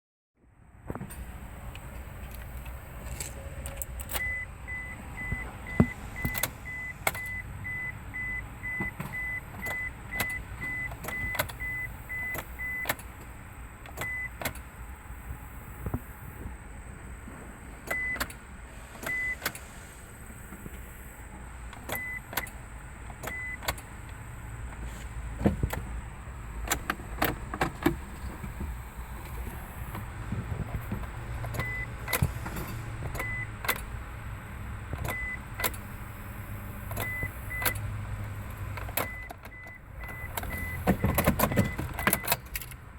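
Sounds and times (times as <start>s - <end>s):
high warning chime beeping: 4.2s - 12.9s, 39.0s - 42.4s.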